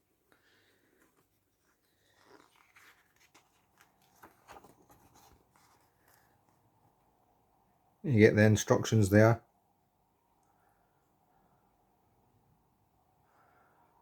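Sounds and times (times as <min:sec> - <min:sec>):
paper and card rustling: 0:00.8 - 0:06.6.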